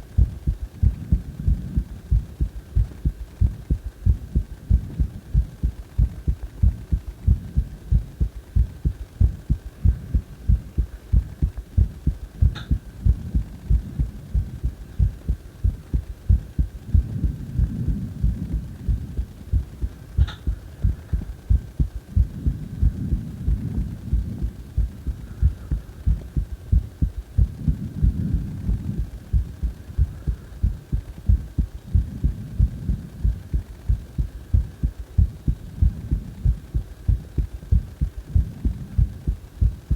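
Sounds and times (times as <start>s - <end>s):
faint steady hum: 0.0s - 39.9s
heartbeat thumps: 0.0s - 39.9s.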